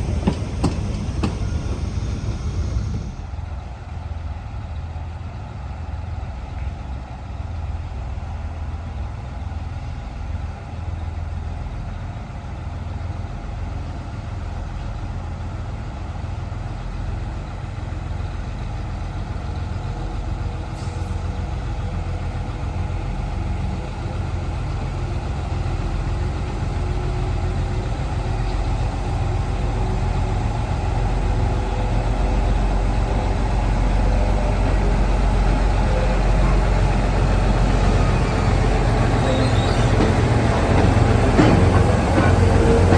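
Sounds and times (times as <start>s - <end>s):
freight locomotive rumbling: 0.0s - 42.9s.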